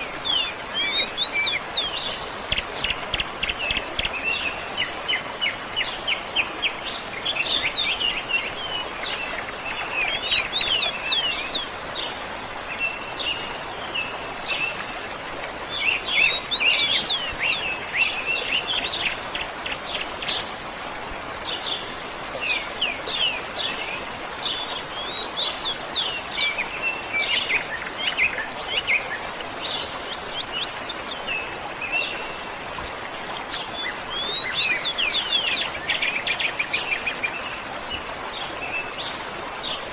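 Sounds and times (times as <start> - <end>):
birds chirping: 18.3 - 20.5.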